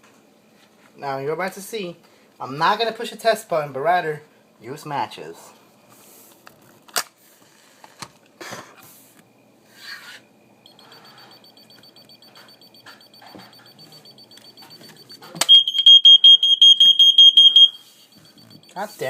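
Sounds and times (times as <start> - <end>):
smoke alarm beeping: 10.6 - 19.0.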